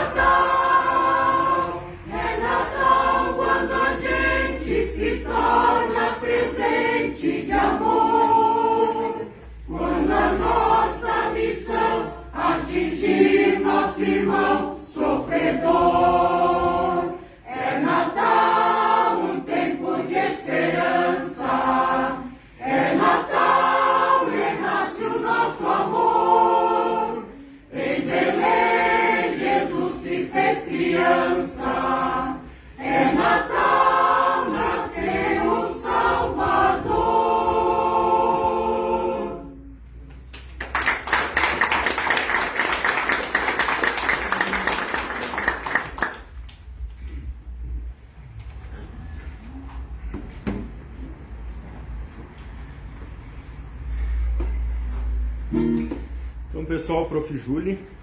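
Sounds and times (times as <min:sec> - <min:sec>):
mixed-voice choir singing: 0:00.0 - 0:40.1.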